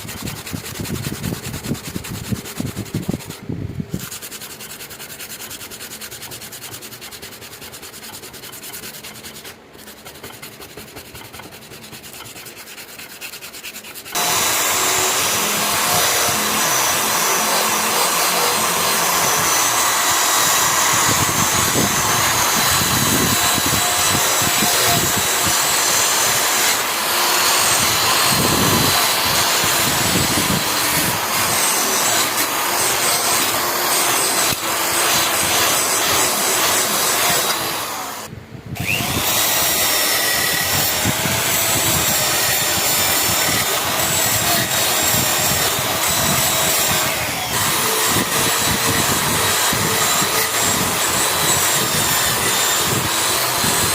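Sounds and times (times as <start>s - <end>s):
grinding rusty steel: 0.0s - 53.9s
power tool motor whining: 14.1s - 53.9s.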